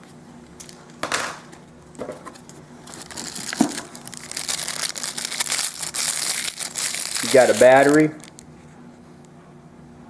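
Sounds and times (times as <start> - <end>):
plastic wrapping crinkling: 1.8 - 8.6
packaging knocks and rustles: 1.9 - 8.4.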